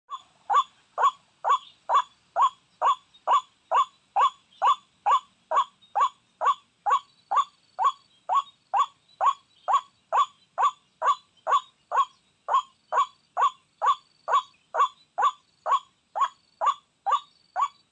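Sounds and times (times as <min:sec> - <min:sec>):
waterhen calling: 0:00.1 - 0:17.9.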